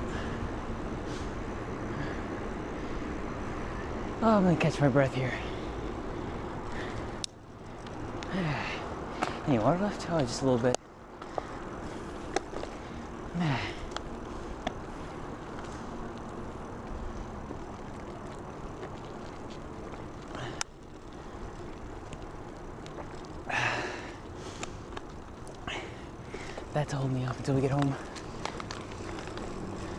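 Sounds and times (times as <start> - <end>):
person breathing heavily: 0.0 - 3.2, 5.3 - 7.2, 8.2 - 9.5, 11.2 - 16.0, 20.2 - 21.5, 23.4 - 25.0, 25.6 - 26.7
bicycle road and wind noise: 0.0 - 29.9.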